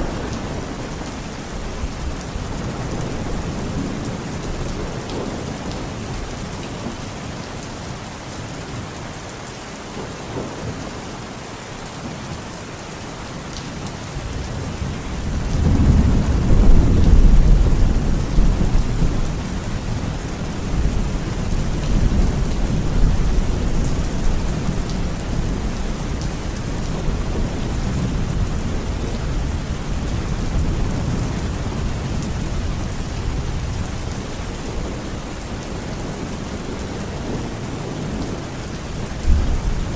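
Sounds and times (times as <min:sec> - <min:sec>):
rain falling: 0:00.0 - 0:39.9
thunder rumbling: 0:14.2 - 0:39.9.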